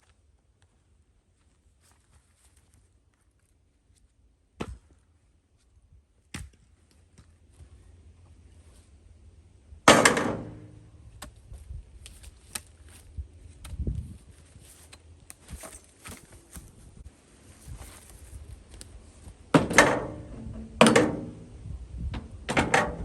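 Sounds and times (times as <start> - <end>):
sharp knocks: 9.9 - 10.8, 19.5 - 21.5.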